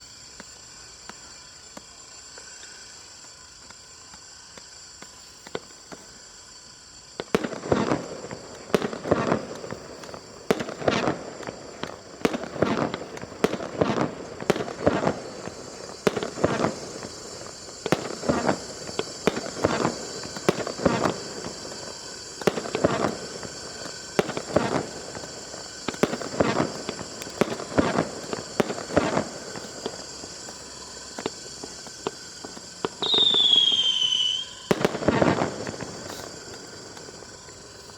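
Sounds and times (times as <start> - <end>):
steady high hiss: 0.0 - 37.9
fireworks bangs: 0.2 - 37.9.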